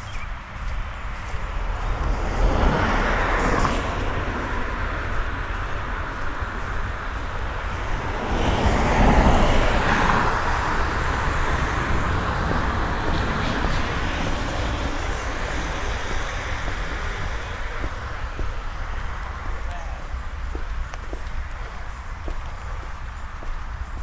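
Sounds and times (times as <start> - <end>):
car tyres hissing on wet street: 0.5 - 19.6.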